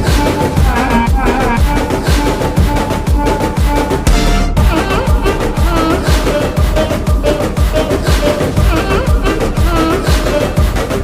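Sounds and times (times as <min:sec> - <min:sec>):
electronic dance music: 0:04.1 - 0:06.1.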